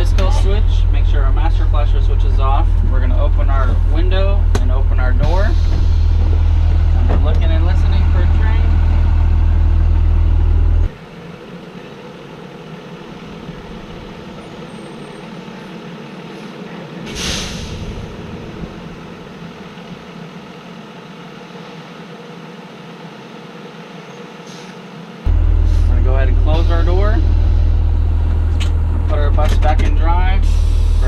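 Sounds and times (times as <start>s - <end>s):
bus engine idling: 0.0s - 31.0s
loud low hum: 0.0s - 31.0s
air brakes hissing: 14.4s - 18.3s, 24.3s - 24.9s, 25.5s - 28.0s, 30.4s - 31.0s.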